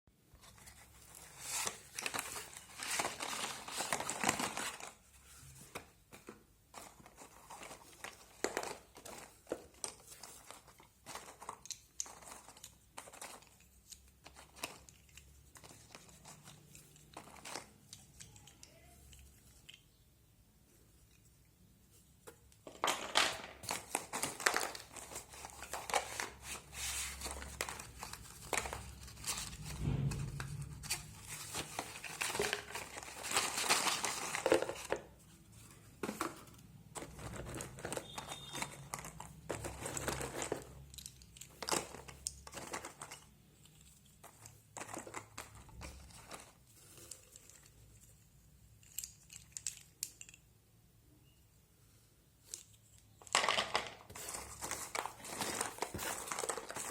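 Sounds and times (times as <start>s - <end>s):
packaging crinkling and tearing: 0.5s - 5.7s, 23.5s - 48.0s, 54.1s - 56.9s.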